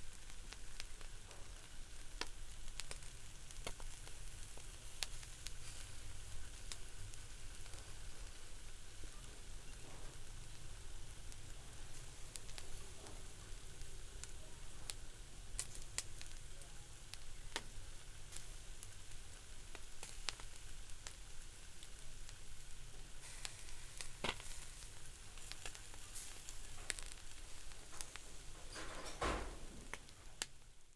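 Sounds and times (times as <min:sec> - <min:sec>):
fat crackling and popping: 0:00.0 - 0:30.9
fish sizzling on a grill: 0:00.0 - 0:30.9
loud knock: 0:29.1 - 0:29.9.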